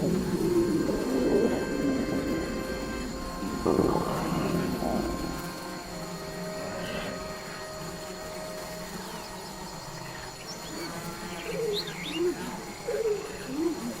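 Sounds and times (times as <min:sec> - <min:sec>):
stomach growling gurgles: 0:00.0 - 0:05.7
steady low hum: 0:00.0 - 0:14.0.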